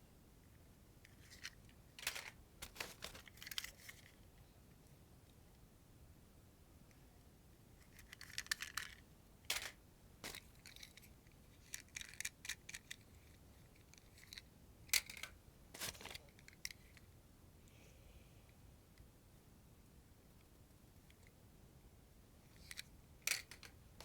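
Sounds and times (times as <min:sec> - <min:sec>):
toy cars clicking: 0:01.1 - 0:04.1, 0:07.9 - 0:17.0, 0:22.6 - 0:23.8
packaging crinkling: 0:02.0 - 0:03.9.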